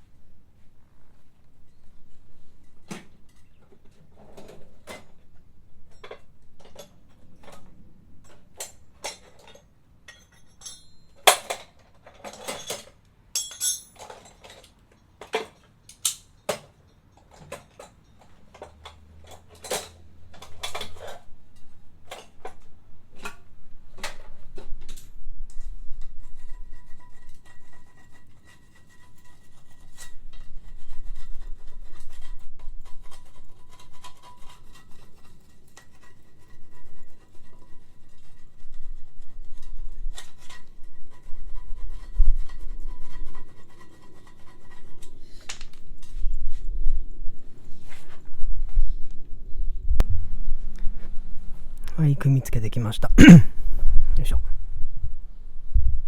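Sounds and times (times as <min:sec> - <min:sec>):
metal tools clinking: 0:09.2 - 0:11.6, 0:12.2 - 0:14.7.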